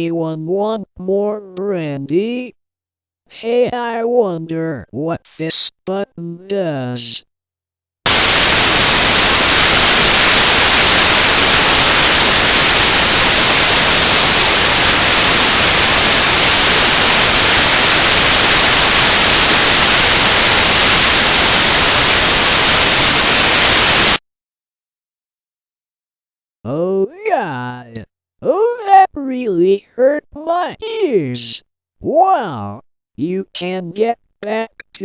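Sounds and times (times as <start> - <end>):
loud harsh static: 8.1 - 24.2.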